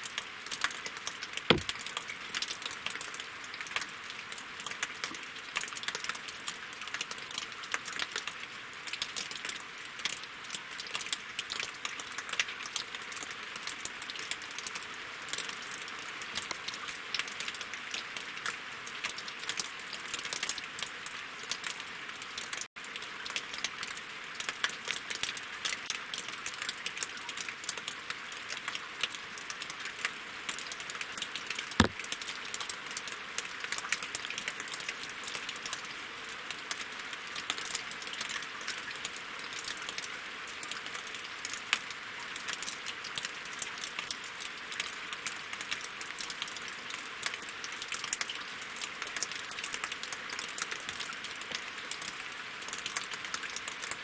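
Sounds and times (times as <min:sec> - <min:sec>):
rain pattering on a lake: 0:00.0 - 0:54.0
low thud: 0:01.5 - 0:01.7.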